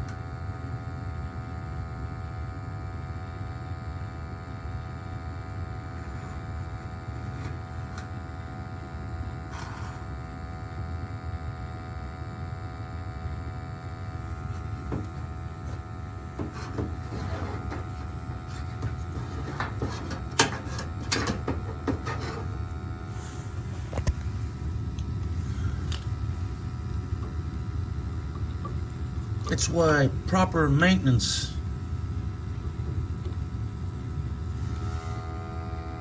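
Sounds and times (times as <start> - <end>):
boiler humming: 0.0 - 36.0
faint steady whine: 0.0 - 36.0.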